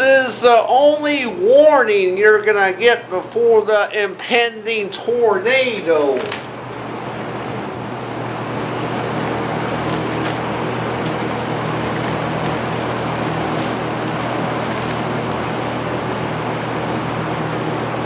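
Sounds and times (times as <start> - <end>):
box fan rushing air: 5.5 - 18.0.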